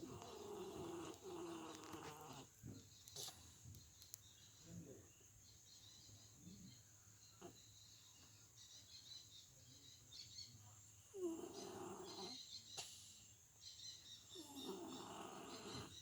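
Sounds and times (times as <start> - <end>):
kitten snoring: 0.0 - 2.5, 11.1 - 12.4, 14.4 - 16.0
faint bird chirps: 0.0 - 16.0
insect hum: 0.0 - 16.0.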